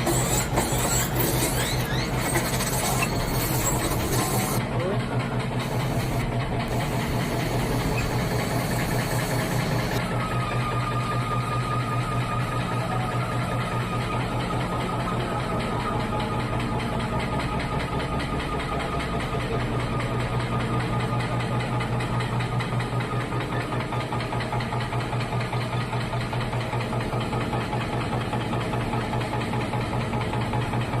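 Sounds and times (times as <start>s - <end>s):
machine humming and whining: 0.0s - 16.6s.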